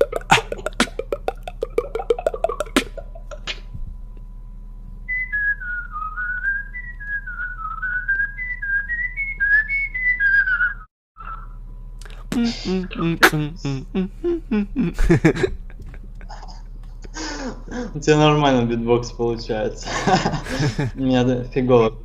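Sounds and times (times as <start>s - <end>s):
beatboxed clicks and hits: 0.0s - 3.9s, 12.0s - 13.5s, 15.4s - 17.0s
person whistling a melody: 5.1s - 11.4s.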